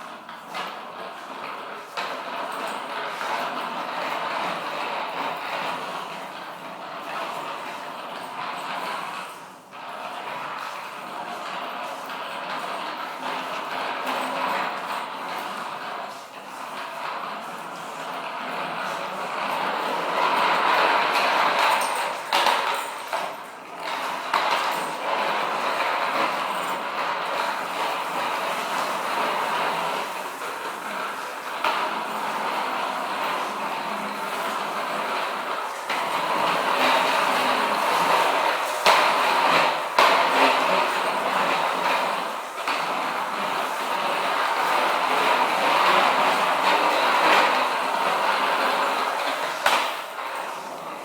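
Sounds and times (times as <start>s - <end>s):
skateboard wheels rolling: 23.8s - 51.0s.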